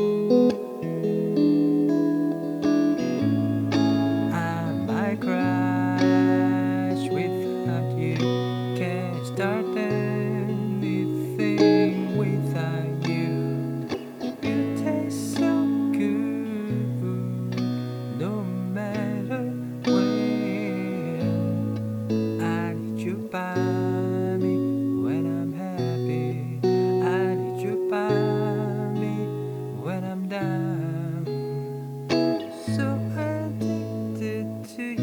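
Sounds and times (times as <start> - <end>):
guitar chords with reverb: 0.0 - 35.0.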